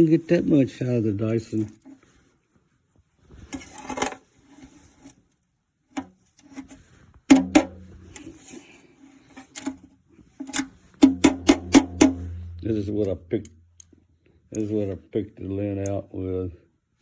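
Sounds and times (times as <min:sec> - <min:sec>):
sharp clicks and knocks: 0:07.3 - 0:08.3, 0:10.4 - 0:14.0.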